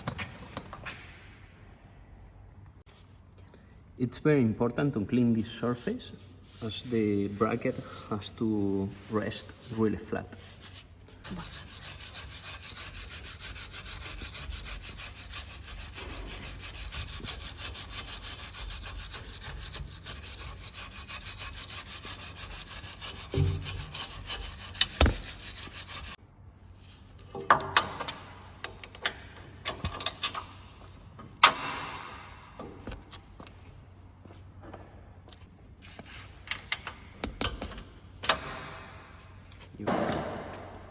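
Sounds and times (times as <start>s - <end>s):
abrasive scrubbing on metal: 5.5s - 26.2s
knocks and short scrapes: 8.7s - 26.2s.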